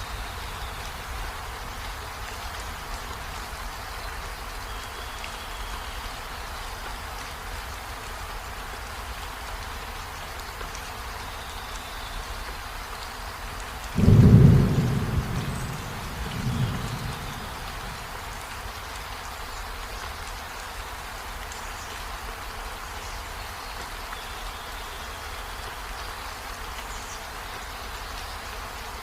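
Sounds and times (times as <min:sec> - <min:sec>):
steady rain: 0:00.0 - 0:29.0
low rumble of thunder: 0:13.9 - 0:18.5.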